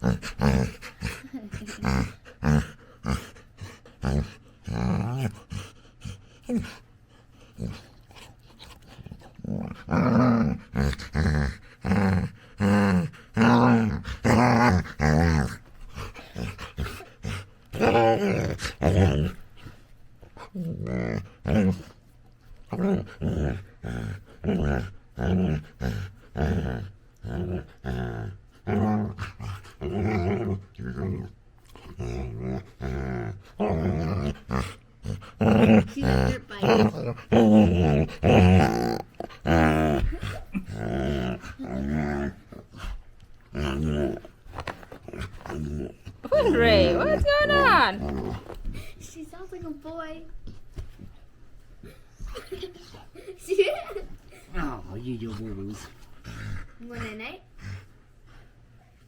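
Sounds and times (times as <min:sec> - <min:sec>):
puppy growly grunts: 0:00.0 - 0:06.8, 0:07.4 - 0:19.7, 0:20.4 - 0:22.0, 0:22.6 - 0:49.0, 0:51.8 - 0:58.4
puppy soft breathing: 0:00.0 - 0:09.9.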